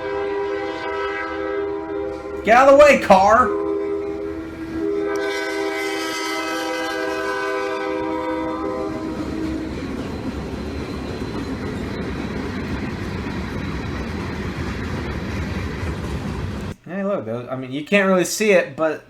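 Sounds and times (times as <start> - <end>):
locomotive air horn blast: 0.0 - 9.9
train wheel and rail noise: 0.0 - 16.8.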